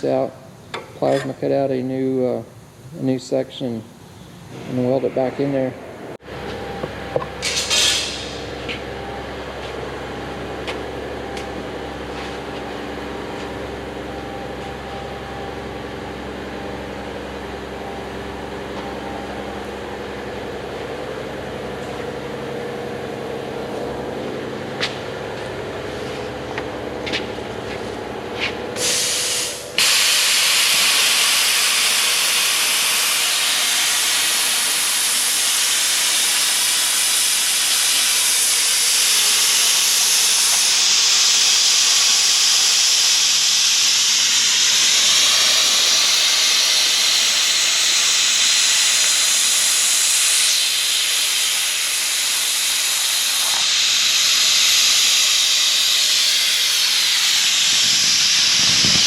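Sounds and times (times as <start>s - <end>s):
plasma cutter hissing through steel: 7.4s - 8.5s, 28.8s - 59.0s
plasma cutter sputtering: 28.8s - 59.0s.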